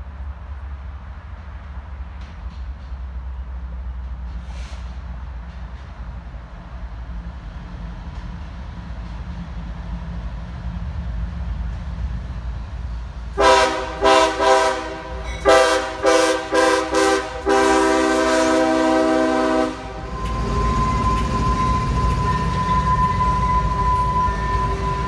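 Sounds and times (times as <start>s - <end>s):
locomotive low rumble: 0.0s - 25.0s
locomotive air horn blasts: 13.4s - 25.0s.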